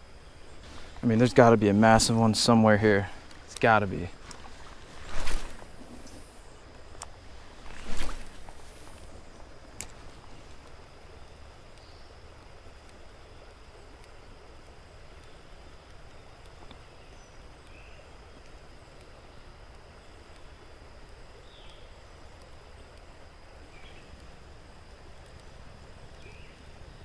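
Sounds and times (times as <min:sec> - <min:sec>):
running water rushing: 0:00.0 - 0:10.7
high insect whine: 0:00.0 - 0:13.5, 0:17.1 - 0:27.0.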